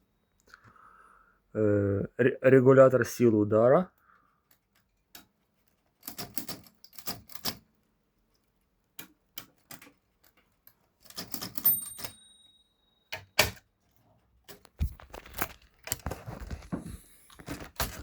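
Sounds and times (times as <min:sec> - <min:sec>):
typewriter mechanism clicking: 0:06.0 - 0:07.6, 0:11.1 - 0:12.2, 0:13.1 - 0:13.6
faint thin ringing tone: 0:11.6 - 0:13.2.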